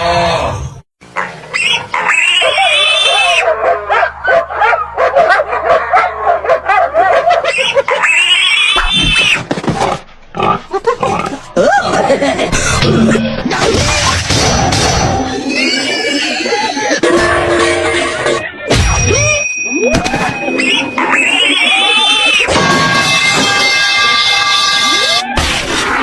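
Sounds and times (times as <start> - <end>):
wavering grunting calls: 0.0 - 3.5, 10.4 - 14.3, 15.1 - 22.5
high-pitched squealing calls: 1.5 - 3.4, 7.4 - 9.4, 15.2 - 17.0, 17.6 - 25.3.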